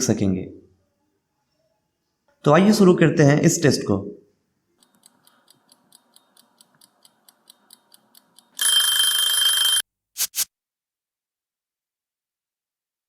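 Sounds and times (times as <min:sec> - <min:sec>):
alarm clock ringing: 0:08.6 - 0:09.8.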